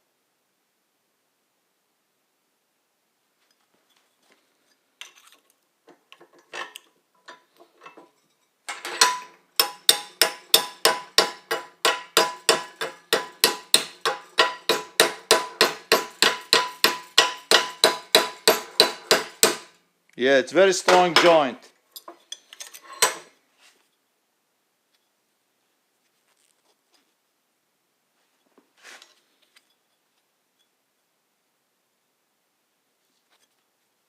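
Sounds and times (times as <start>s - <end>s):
hammer striking metal: 8.7s - 19.8s, 20.8s - 21.5s.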